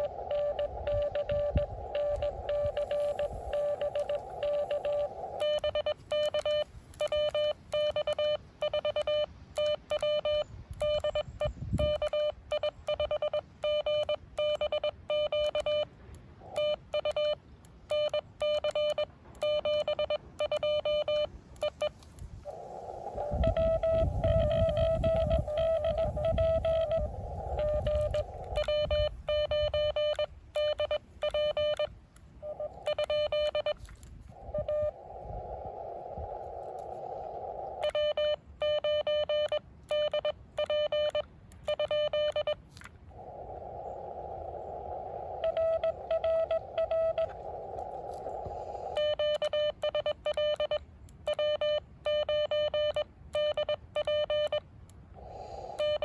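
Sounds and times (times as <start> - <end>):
radio receiver hiss: 0.0 - 9.1, 20.6 - 38.8
morse code tone: 0.0 - 15.9, 16.5 - 22.0, 23.2 - 33.9, 34.5 - 35.0, 37.8 - 42.6, 45.4 - 47.4, 48.9 - 54.6, 55.8 - 56.0
faint morse signal: 0.0 - 42.6, 44.8 - 54.6, 55.3 - 56.0.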